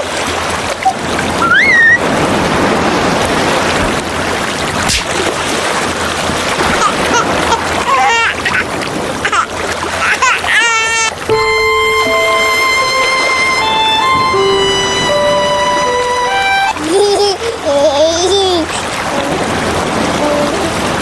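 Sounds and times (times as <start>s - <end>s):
water splashing and rushing: 0.0s - 21.0s
squeaky cries: 0.9s - 2.0s
rising squeal: 1.4s - 2.0s.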